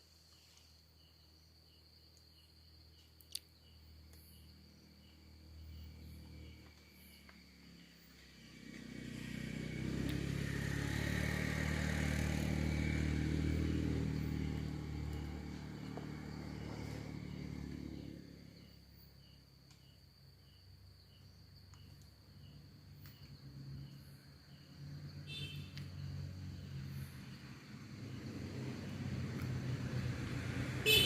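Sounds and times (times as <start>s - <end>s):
crickets chirping: 0.0s - 31.0s
vehicle driving past: 4.9s - 19.1s, 22.3s - 31.0s.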